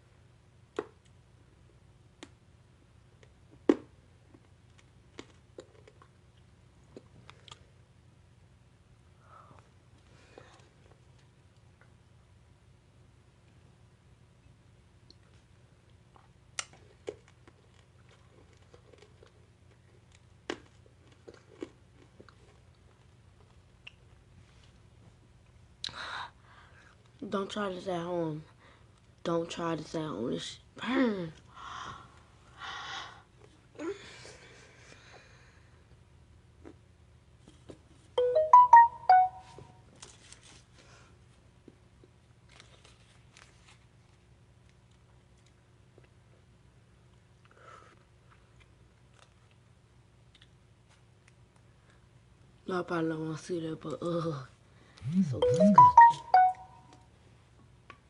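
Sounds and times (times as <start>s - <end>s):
teeth crunching hard candy: 3.2s - 7.6s, 16.1s - 24.0s
phone alert jingle: 38.2s - 39.6s, 55.1s - 56.8s.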